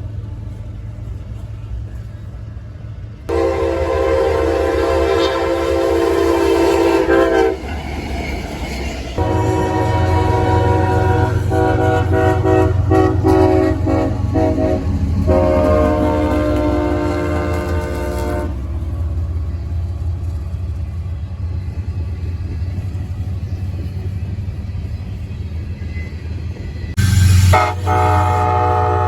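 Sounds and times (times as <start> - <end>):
train rumble and rail noise: 0.0 - 29.0
locomotive air horn blasts: 3.3 - 7.6, 9.2 - 18.7, 27.0 - 29.0.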